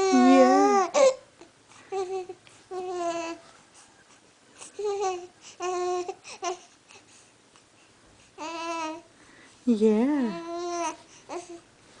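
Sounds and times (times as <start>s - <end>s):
baby cooing and babbling: 0.0s - 3.4s, 4.7s - 6.8s, 8.4s - 9.1s, 10.4s - 11.7s.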